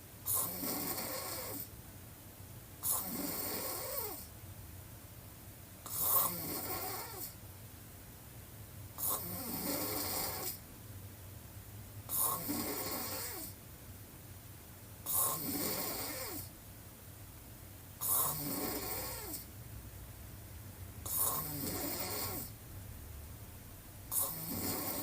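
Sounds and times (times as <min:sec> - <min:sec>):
woman snoring: 0:00.3 - 0:01.7, 0:02.8 - 0:04.3, 0:05.9 - 0:07.4, 0:09.0 - 0:10.6, 0:12.1 - 0:13.6, 0:15.1 - 0:16.5, 0:18.0 - 0:19.5, 0:21.0 - 0:22.5, 0:24.1 - 0:25.0.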